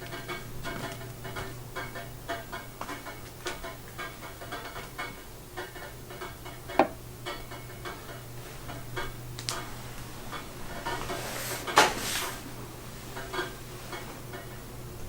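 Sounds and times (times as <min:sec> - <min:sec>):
dishes and utensils clicking: 0:00.0 - 0:09.7
steady low hum: 0:00.0 - 0:11.8.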